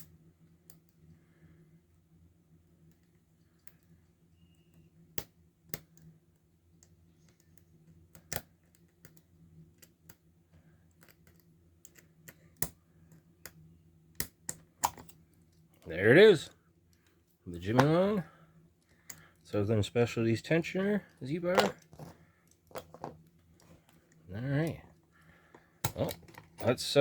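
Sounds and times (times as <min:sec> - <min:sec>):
low steady hum: 0:00.0 - 0:27.0
lock picks clicking and tapping: 0:06.8 - 0:10.2, 0:10.9 - 0:15.7, 0:21.5 - 0:24.2, 0:25.3 - 0:26.7.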